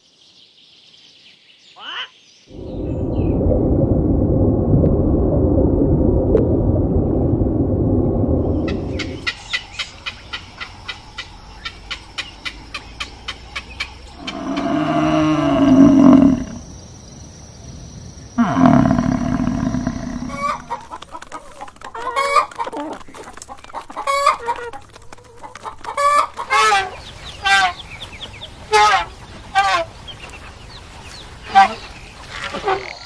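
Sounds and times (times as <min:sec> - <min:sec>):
hens clucking: 0:19.1 - 0:30.7.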